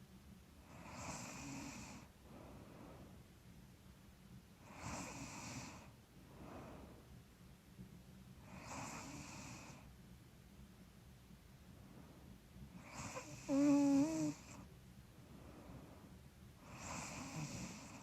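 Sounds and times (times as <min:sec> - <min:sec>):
woman snoring faintly: 0:12.8 - 0:14.7, 0:16.7 - 0:18.0.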